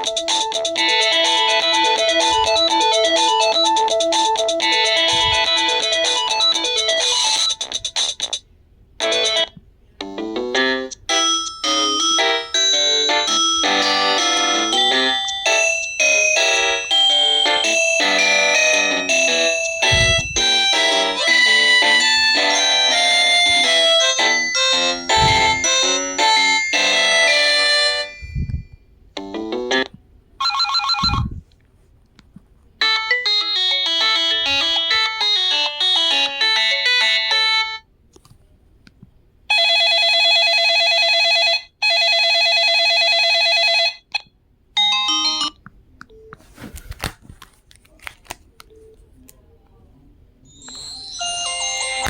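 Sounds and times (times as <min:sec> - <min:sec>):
phone ringtone melodies: 0:00.0 - 0:08.4, 0:09.0 - 0:09.5, 0:10.2 - 0:29.8, 0:30.4 - 0:31.4, 0:32.8 - 0:37.8, 0:39.5 - 0:44.1, 0:44.8 - 0:45.6, 0:50.5 - 0:52.0
steady ringing tone: 0:11.1 - 0:28.8.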